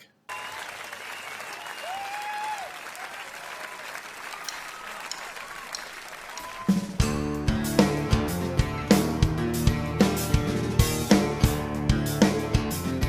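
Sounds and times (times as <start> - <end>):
whistles and shouts: 0.3 - 7.0
audience applauding and cheering: 0.3 - 7.4.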